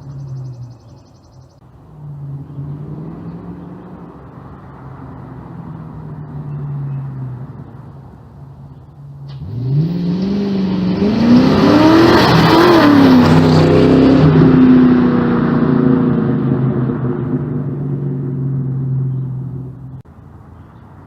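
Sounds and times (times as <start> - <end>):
car exhaust accelerating: 9.2 - 20.1.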